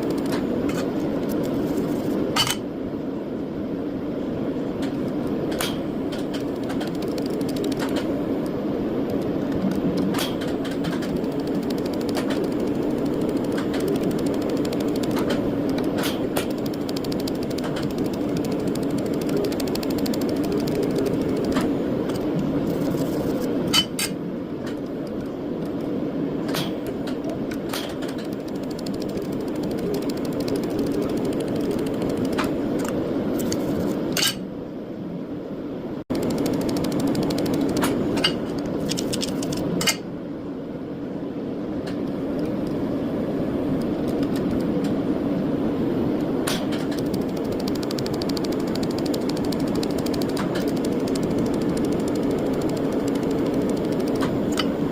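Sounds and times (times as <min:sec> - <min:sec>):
sharp clicks: 0:04.8 - 0:23.5, 0:26.5 - 0:33.6, 0:36.1 - 0:39.7, 0:46.5 - 0:54.7
welding machine humming: 0:05.6 - 0:23.9, 0:26.6 - 0:34.1, 0:36.1 - 0:39.6, 0:46.5 - 0:54.9.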